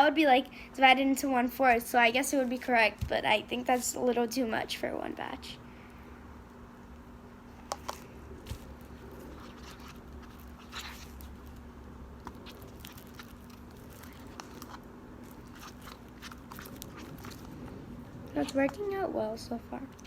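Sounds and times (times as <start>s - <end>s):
spoon stirring sticky slime: 7.7s - 19.1s.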